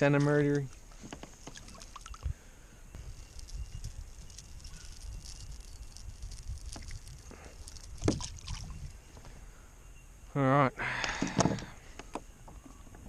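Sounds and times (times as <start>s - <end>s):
water movement around hull: 0.6s - 9.3s.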